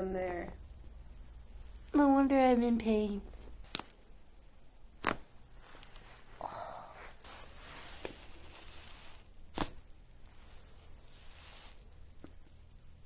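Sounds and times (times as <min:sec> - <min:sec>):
soft rustling: 0:05.0 - 0:12.7.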